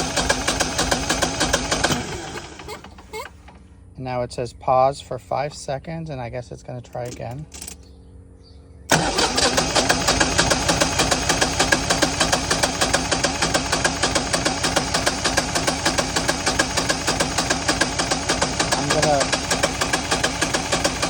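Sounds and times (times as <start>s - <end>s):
generator starter cranking engine: 0.0s - 3.6s, 6.9s - 8.0s, 8.9s - 21.0s
faint hum: 2.6s - 9.0s.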